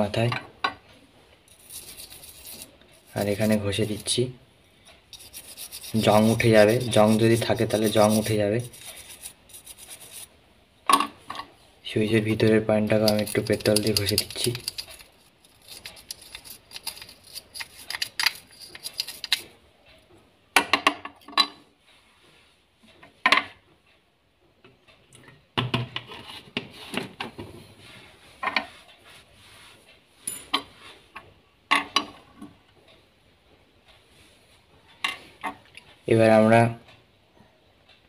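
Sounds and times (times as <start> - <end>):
brush scrubbing contacts: 1.5 - 4.2, 5.1 - 10.3, 12.2 - 19.5.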